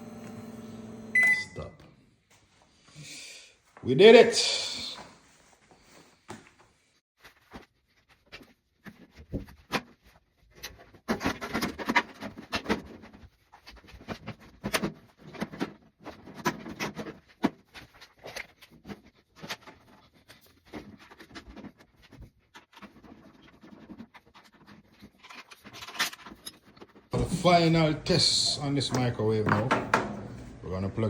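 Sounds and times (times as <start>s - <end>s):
objects being handled clattering: 7.2s - 30.6s.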